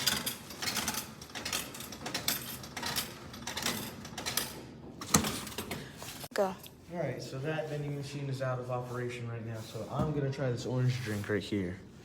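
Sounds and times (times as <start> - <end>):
coins clinking in vending machine: 0.0 - 5.8.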